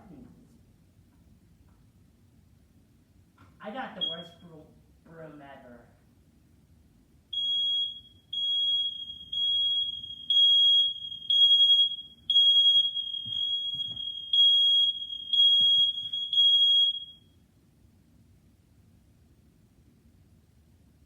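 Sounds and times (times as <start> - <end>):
smoke alarm beeping: 3.9 - 4.6, 7.3 - 17.4.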